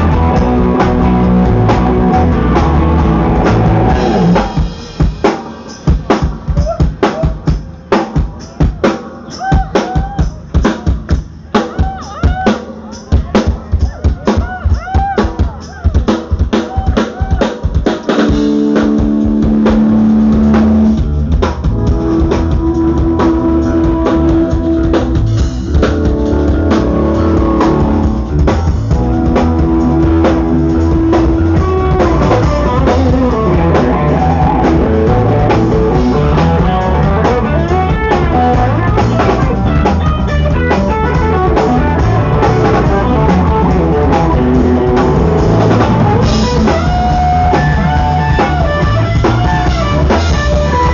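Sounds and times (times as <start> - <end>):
electric guitar held notes: 0.0 - 4.7, 21.7 - 50.9
drum beat: 0.0 - 50.9.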